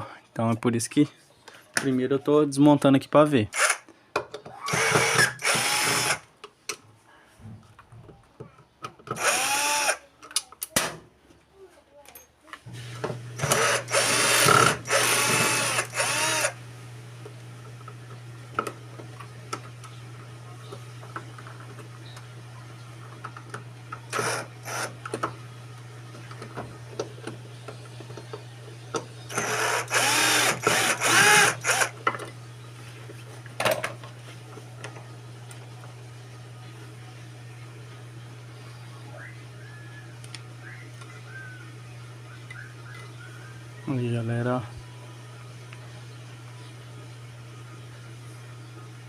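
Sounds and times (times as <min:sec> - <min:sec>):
cordless screwdriver whirring: 0:03.6 - 0:03.8, 0:04.7 - 0:06.2, 0:09.2 - 0:10.0, 0:13.4 - 0:16.6, 0:24.1 - 0:24.9, 0:29.3 - 0:32.0.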